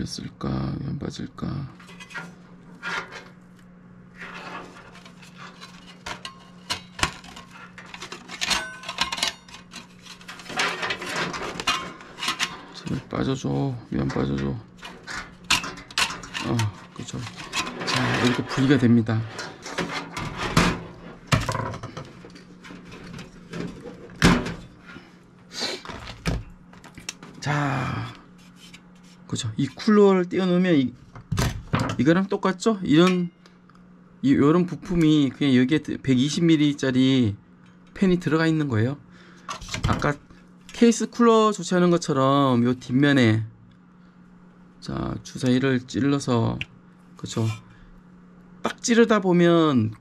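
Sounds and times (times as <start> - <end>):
scraping rustle: 4.1 - 13.2, 14.0 - 21.3
plastic and metal parts rattling: 4.6 - 13.0
computer parts knocking and clattering: 5.7 - 13.0, 14.0 - 18.8, 19.6 - 24.7, 31.2 - 32.1.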